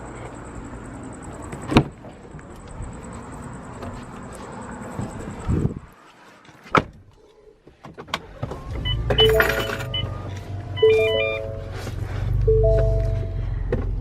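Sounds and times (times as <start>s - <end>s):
short high beeps: 8.9s - 10.1s, 10.8s - 13.5s
two-note dashboard warning chimes: 8.9s - 13.5s.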